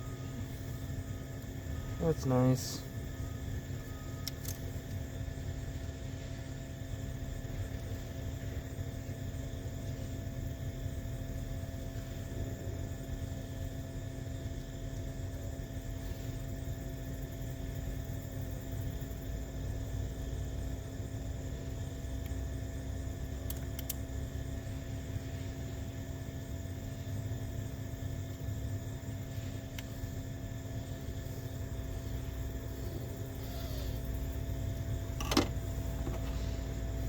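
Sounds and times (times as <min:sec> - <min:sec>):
faint constant hum: 0:00.0 - 0:37.0
steady low rumble: 0:00.0 - 0:37.0.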